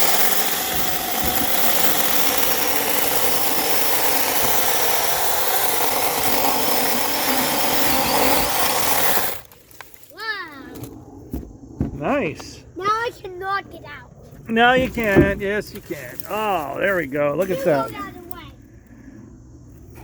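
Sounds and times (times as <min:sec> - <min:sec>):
mini chainsaw cutting wood: 0:00.0 - 0:10.1.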